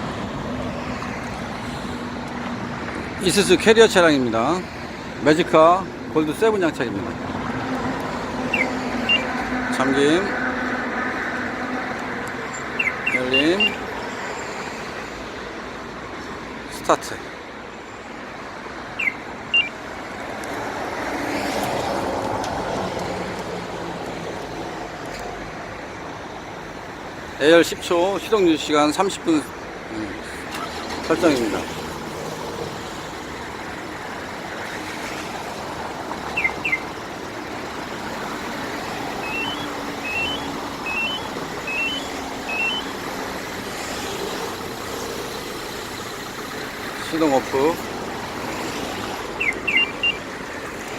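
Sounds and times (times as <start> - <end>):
electronic alarm chirps: 8.5 - 9.4, 12.5 - 13.8, 19.0 - 19.8, 36.3 - 37.0, 39.1 - 43.1, 49.4 - 50.3
truck diesel engine starting: 30.2 - 48.5
rising three-note electronic beep: 39.2 - 42.9.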